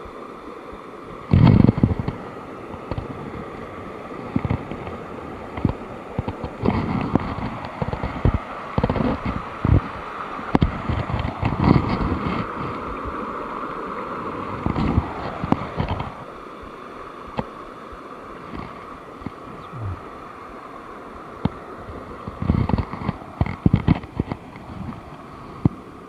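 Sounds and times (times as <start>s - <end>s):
river water flowing: 0.0s - 26.0s
low rumble: 19.5s - 20.0s.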